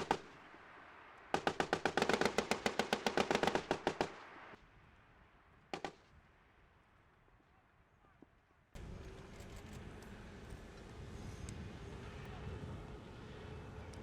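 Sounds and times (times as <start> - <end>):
machine-gun fire: 0.0 - 0.5, 1.3 - 4.6, 5.7 - 6.0.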